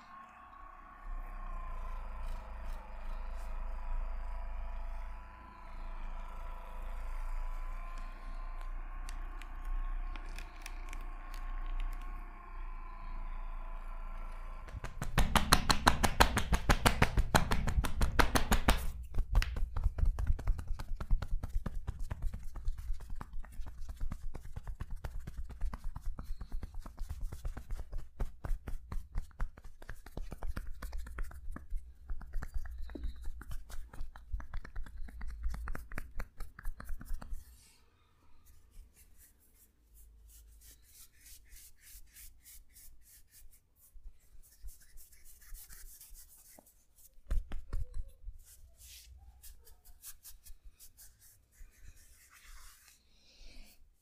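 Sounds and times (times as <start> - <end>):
hands hacking massage strikes: 14.7 - 21.6.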